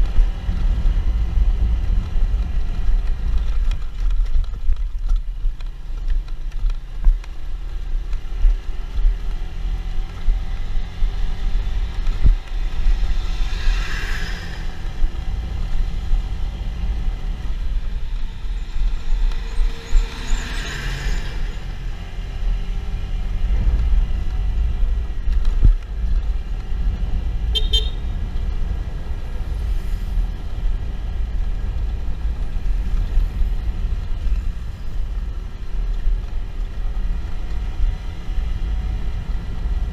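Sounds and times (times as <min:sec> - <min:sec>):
motorcycle engine and wind rumble: 0:00.0 - 0:39.9
vehicle horn toots: 0:27.5 - 0:28.0.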